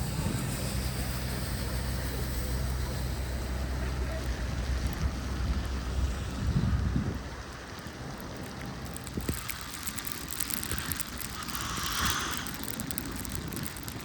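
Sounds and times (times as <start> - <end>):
steady hiss: 0.0 - 4.2, 8.8 - 14.0
wind buffeting microphone: 0.0 - 14.0.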